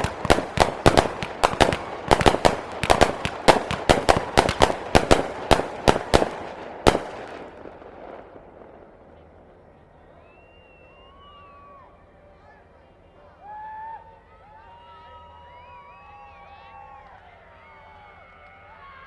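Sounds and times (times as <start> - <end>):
fireworks bangs: 0.0 - 9.7
fireworks rumble: 0.0 - 13.3.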